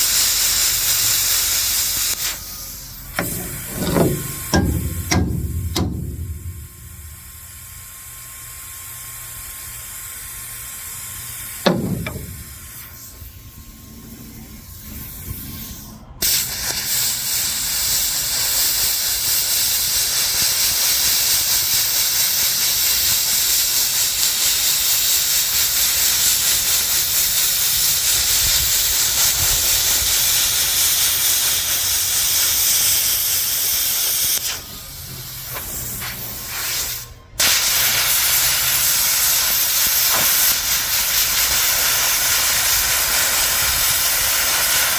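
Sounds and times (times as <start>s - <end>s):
plasma cutter hissing: 0.0s - 44.9s
quiet hiss: 2.2s - 8.3s
loud knock: 3.2s - 7.9s, 11.7s - 13.0s.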